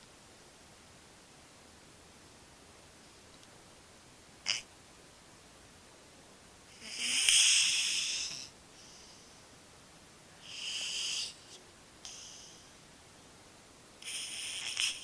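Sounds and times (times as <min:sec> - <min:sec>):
cat snoring: 0:06.7 - 0:09.3, 0:10.4 - 0:12.7, 0:14.0 - 0:15.0.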